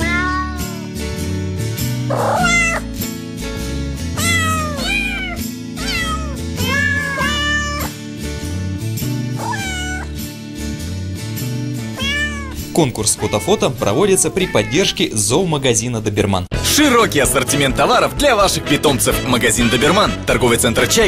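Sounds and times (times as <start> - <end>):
cat meowing: 0.0 - 1.0, 2.1 - 2.9, 4.2 - 8.0, 9.4 - 10.2, 11.9 - 15.2
background music with steady beat: 16.5 - 21.0.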